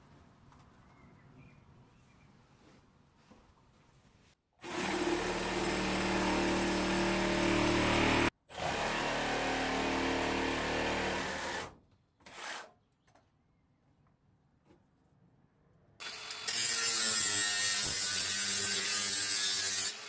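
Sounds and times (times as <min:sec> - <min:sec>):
electric saw cutting wood: 0:04.6 - 0:11.7, 0:16.0 - 0:20.0.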